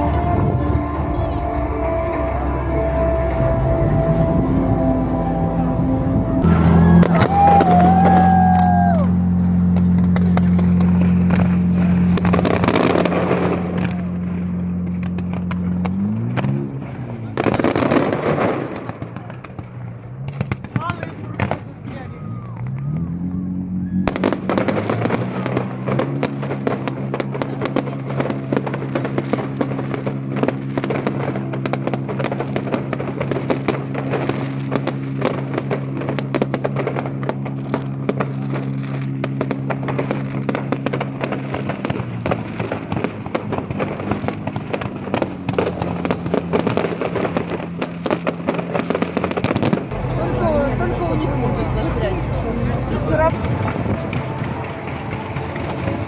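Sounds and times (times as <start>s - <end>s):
music with sustained chords: 0.0s - 16.9s, 49.4s - 56.0s
fireworks bangs and crackling: 5.9s - 56.0s.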